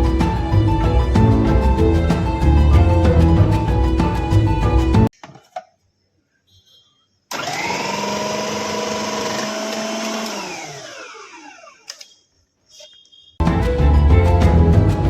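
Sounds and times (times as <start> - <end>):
music: 0.0 - 5.1, 13.4 - 15.0
mixer grinder motor running: 7.3 - 11.8.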